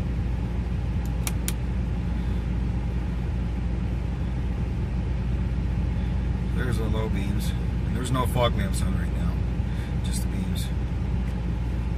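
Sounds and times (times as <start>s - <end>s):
car engine running: 0.0s - 11.9s
sharp clicks: 1.0s - 1.6s.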